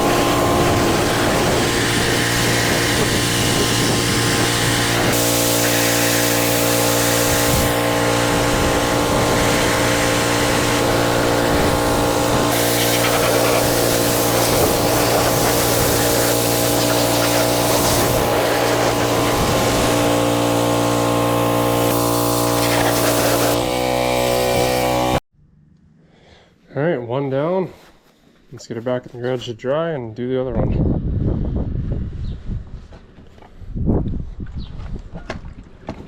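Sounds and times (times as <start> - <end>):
pressure washer motor hum: 0.0 - 25.2
water jet spray hiss: 0.0 - 25.2.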